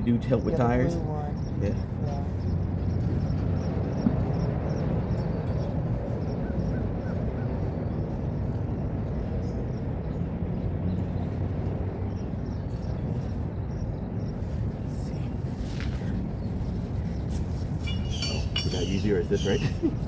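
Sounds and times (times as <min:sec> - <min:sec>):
low outdoor rumble: 0:00.0 - 0:20.0
faint bird calls: 0:17.1 - 0:19.9
faint high chirps: 0:17.8 - 0:19.6.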